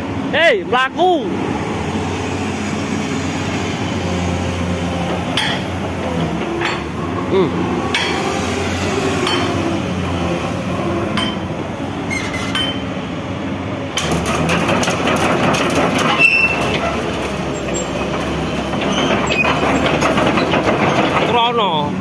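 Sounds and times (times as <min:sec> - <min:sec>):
excavator engine humming: 0:00.0 - 0:22.0
metal clanking: 0:05.1 - 0:08.4, 0:12.1 - 0:13.0, 0:14.0 - 0:21.7
brief squeaks: 0:12.1 - 0:12.8, 0:16.1 - 0:17.0.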